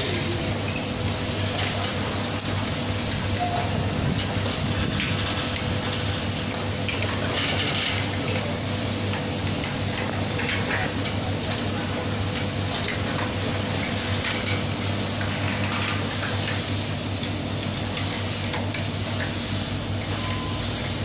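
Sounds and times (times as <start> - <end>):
electric gate motor humming: 0.0 - 21.0.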